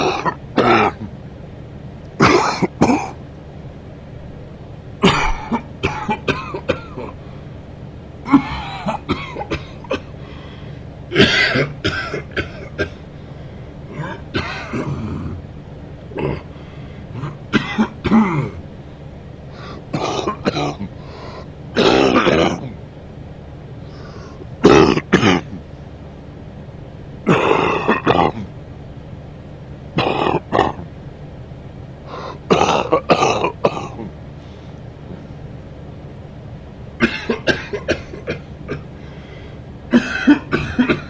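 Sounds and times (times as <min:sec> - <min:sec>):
man clearing his throat: 0:00.0 - 0:01.1, 0:02.2 - 0:03.2, 0:05.0 - 0:07.2, 0:08.3 - 0:10.2, 0:11.1 - 0:13.0, 0:13.9 - 0:15.4, 0:16.1 - 0:16.5, 0:17.2 - 0:18.6, 0:20.0 - 0:21.0, 0:21.8 - 0:22.8, 0:24.5 - 0:25.6, 0:27.3 - 0:28.5, 0:30.0 - 0:30.9, 0:32.3 - 0:34.2, 0:37.0 - 0:38.9, 0:39.9 - 0:41.0
man coughing: 0:00.0 - 0:01.1, 0:02.2 - 0:03.2, 0:05.0 - 0:07.2, 0:08.3 - 0:10.2, 0:11.1 - 0:13.0, 0:13.9 - 0:15.4, 0:16.2 - 0:16.5, 0:17.2 - 0:18.6, 0:19.7 - 0:21.0, 0:21.8 - 0:22.8, 0:24.4 - 0:25.6, 0:27.3 - 0:28.5, 0:30.0 - 0:30.8, 0:32.2 - 0:34.2, 0:37.0 - 0:38.9, 0:39.9 - 0:41.0.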